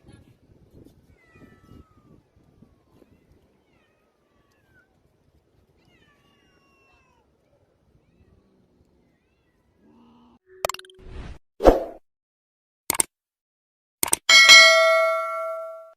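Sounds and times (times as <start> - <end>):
cats meowing faintly: 0.1 - 10.4.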